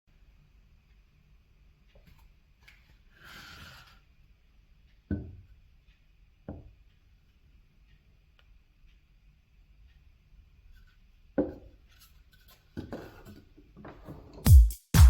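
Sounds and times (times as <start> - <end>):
scraping rub: 3.1 - 4.0.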